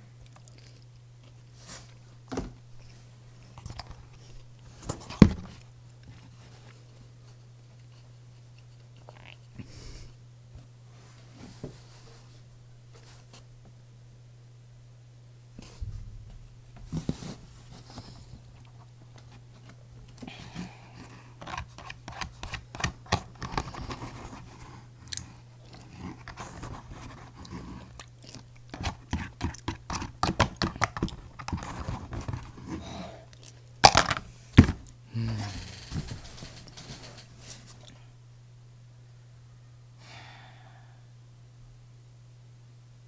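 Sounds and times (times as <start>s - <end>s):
low steady hum: 0.0s - 43.0s
crunchy chewing: 0.2s - 2.0s, 18.0s - 33.9s.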